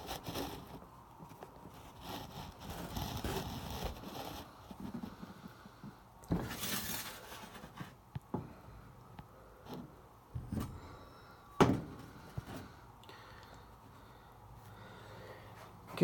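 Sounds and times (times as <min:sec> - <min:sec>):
scraping rustle: 0:00.0 - 0:08.0.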